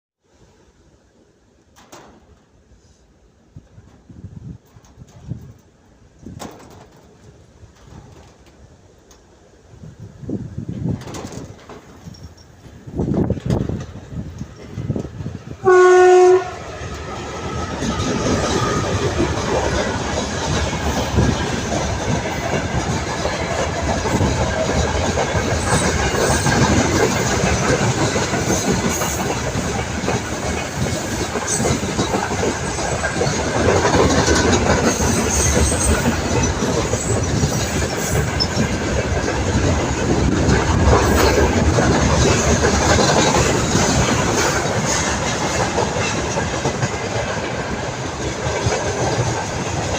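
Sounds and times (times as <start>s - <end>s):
train rumbling past: 0.3s - 49.9s
wheels clacking over rail joints: 3.8s - 9.4s, 10.7s - 49.9s
locomotive horn blast: 15.6s - 16.7s.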